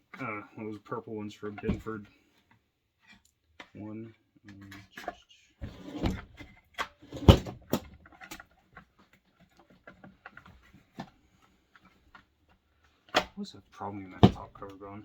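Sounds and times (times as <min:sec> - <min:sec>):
chainsaw parts knocking and clicking: 0:14.1 - 0:14.9.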